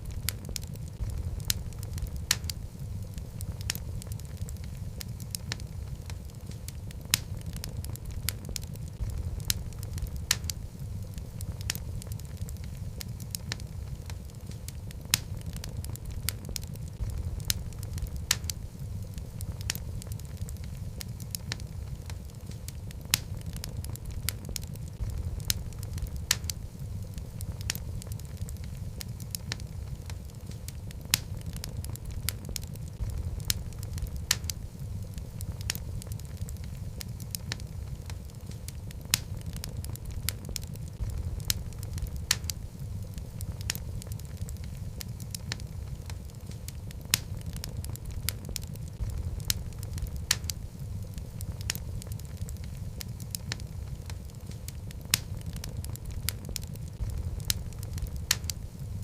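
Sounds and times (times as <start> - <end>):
burning logs crackling and popping: 0.0 - 59.0
fire flames rumbling: 0.0 - 59.0.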